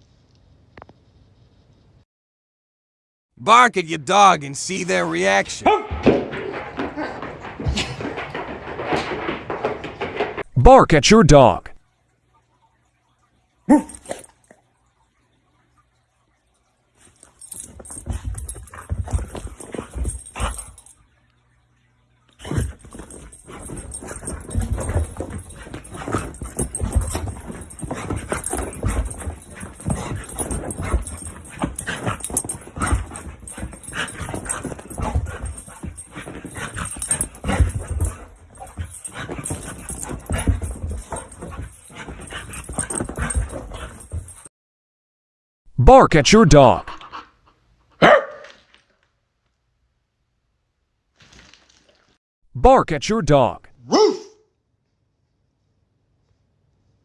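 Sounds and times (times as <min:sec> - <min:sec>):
dogs barking: 0:05.6 - 0:07.2, 0:13.7 - 0:14.3, 0:48.0 - 0:48.6, 0:53.8 - 0:54.4.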